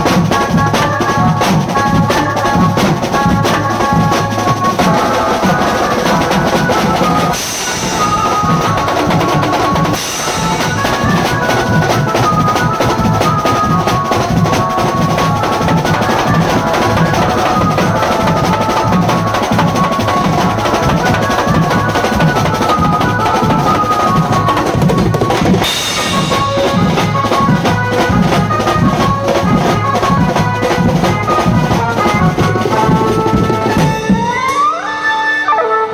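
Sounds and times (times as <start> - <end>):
fast loud drumming: 0.0 - 34.7
high repeating melody: 0.0 - 35.0.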